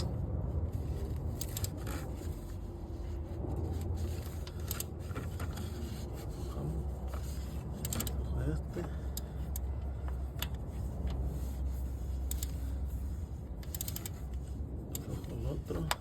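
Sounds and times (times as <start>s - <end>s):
steady low hum: 0.0s - 16.0s
ratchet scraping on metal: 1.1s - 2.5s, 10.4s - 15.8s
ratchet clicks: 1.3s - 2.0s, 7.7s - 8.2s, 12.2s - 12.7s, 13.6s - 15.1s.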